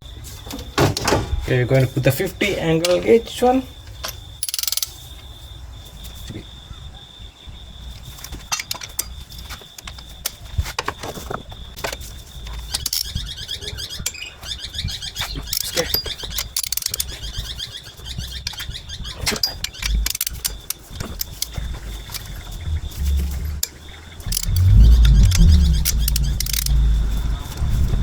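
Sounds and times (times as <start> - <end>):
metal tools clinking: 4.0 - 5.0, 15.6 - 17.2
ratchet wrench clicking: 4.4 - 5.0, 16.4 - 17.1, 19.6 - 21.5, 24.2 - 26.8.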